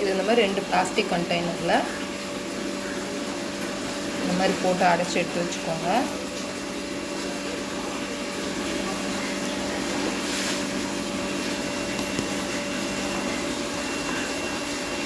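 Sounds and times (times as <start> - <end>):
machine hum with hiss: 0.0 - 15.0.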